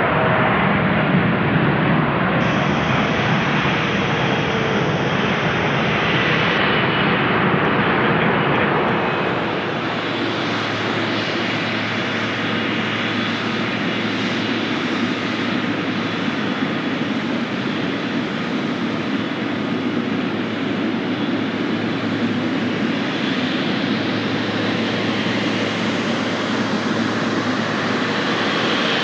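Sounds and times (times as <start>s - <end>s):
jet airliner flying overhead: 0.0s - 29.0s.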